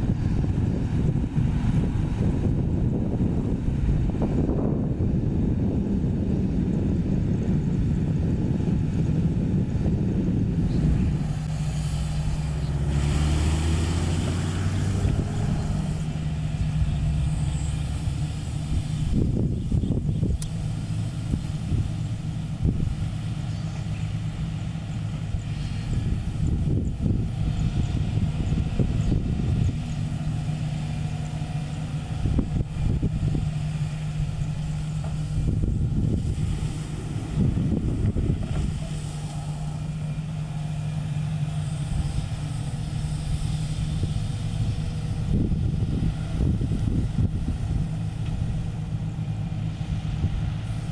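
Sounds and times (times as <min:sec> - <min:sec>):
excavator diesel engine running: 0:00.0 - 0:50.9
low hum: 0:00.0 - 0:50.9
hiss: 0:10.7 - 0:50.9.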